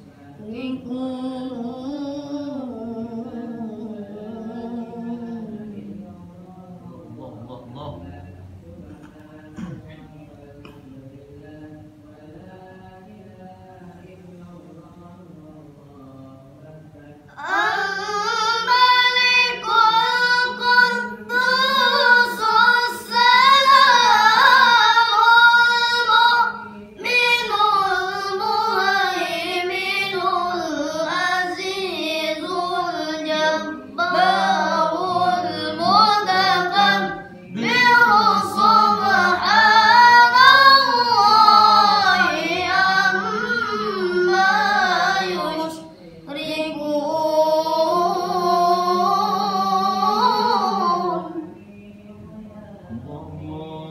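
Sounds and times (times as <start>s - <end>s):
child chanting melodically: 0.0s - 14.7s, 16.6s - 51.6s.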